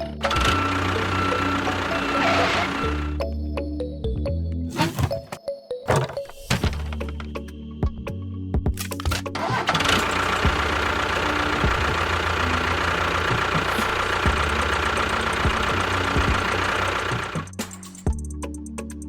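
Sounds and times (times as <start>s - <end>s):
small motor whirring: 0.2s - 3.2s.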